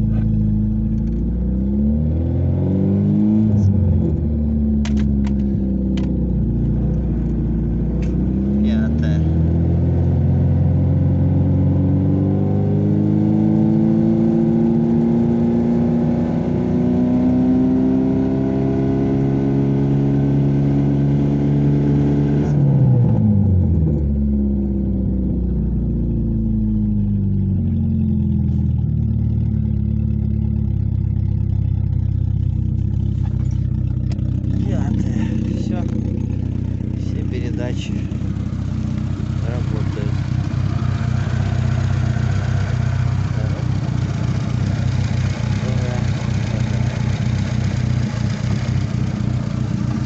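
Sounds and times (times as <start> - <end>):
car engine running: 0.0 - 50.0.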